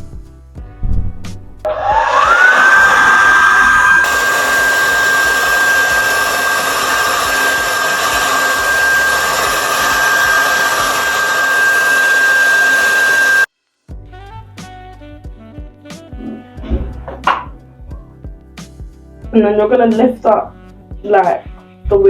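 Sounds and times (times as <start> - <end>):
hair dryer blowing: 1.7 - 13.5
quiet background music: 15.6 - 22.0.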